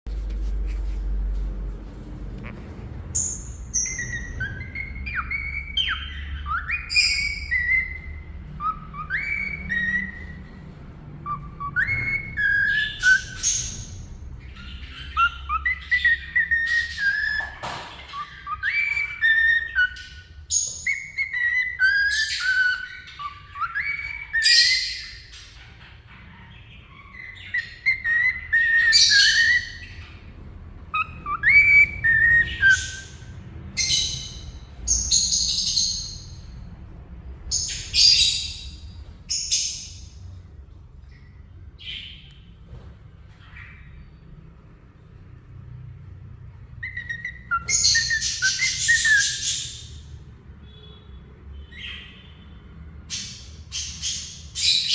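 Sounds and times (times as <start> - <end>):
bird chirps: 2.2 - 44.4, 46.7 - 54.9
cockatiel whistling: 3.2 - 10.4, 11.2 - 25.6, 27.0 - 30.1, 30.9 - 36.5, 46.8 - 49.9.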